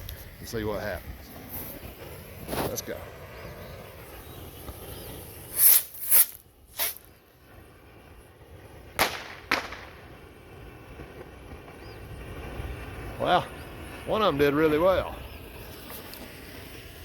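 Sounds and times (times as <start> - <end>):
rockets bursting with sharp pops: 0.0 - 17.0
bottle rockets hissing: 1.3 - 7.3, 8.9 - 17.0.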